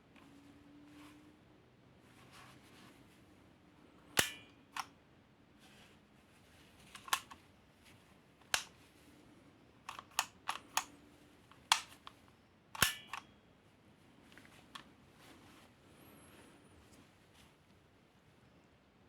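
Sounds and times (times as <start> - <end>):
toy pistol clicks and clacks: 7.0 - 7.4, 8.5 - 8.7, 9.9 - 10.9, 11.6 - 12.2, 12.8 - 13.3.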